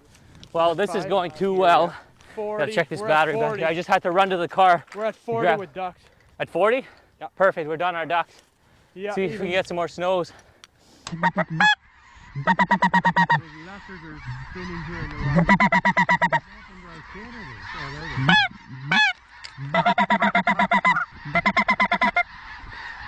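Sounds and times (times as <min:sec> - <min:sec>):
soft goose chatter: 0:00.0 - 0:23.0
goose honking: 0:00.6 - 0:05.8, 0:09.0 - 0:10.2, 0:11.2 - 0:23.0.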